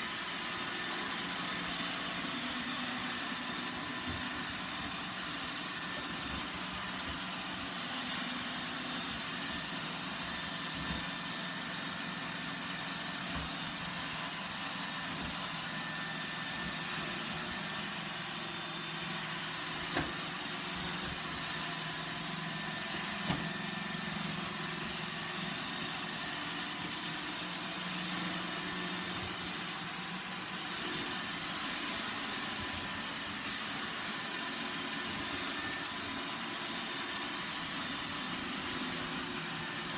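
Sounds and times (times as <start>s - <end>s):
robot vacuum motor hum: 0.0s - 39.9s.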